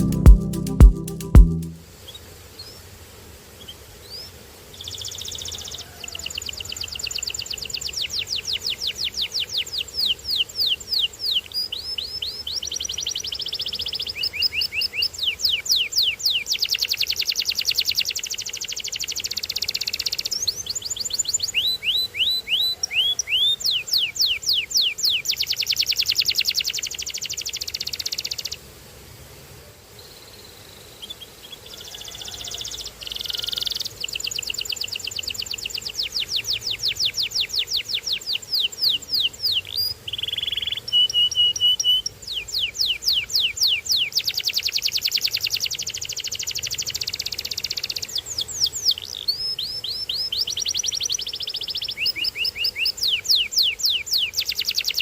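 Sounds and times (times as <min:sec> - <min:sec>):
canary singing trills: 0:33.2 - 0:55.0.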